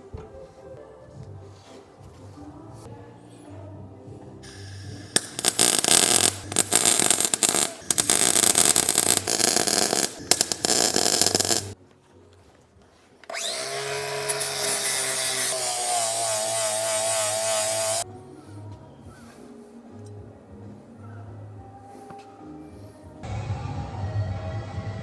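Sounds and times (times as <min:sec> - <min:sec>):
background music: 0:00.0 - 0:25.0
welder crackling: 0:04.4 - 0:11.8, 0:13.3 - 0:18.0.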